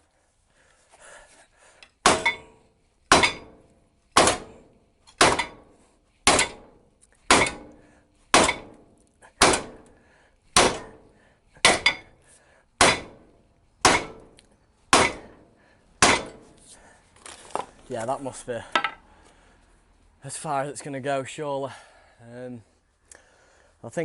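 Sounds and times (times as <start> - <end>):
hammer striking metal: 2.0 - 5.7, 6.3 - 8.8, 9.4 - 9.9, 10.6 - 12.1, 12.8 - 14.3, 14.9 - 16.5.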